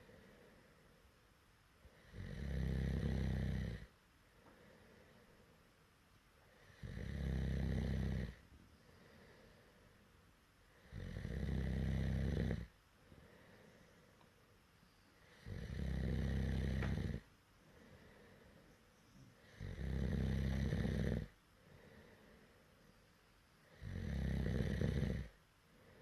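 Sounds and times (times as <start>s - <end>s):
loud snoring: 2.0s - 3.9s, 6.7s - 8.4s, 10.8s - 12.7s, 15.4s - 17.2s, 19.5s - 21.3s, 23.8s - 25.3s.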